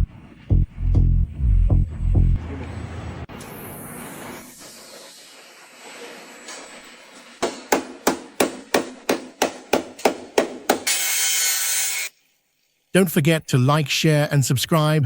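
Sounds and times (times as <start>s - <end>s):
hammer striking metal: 6.5s - 11.9s.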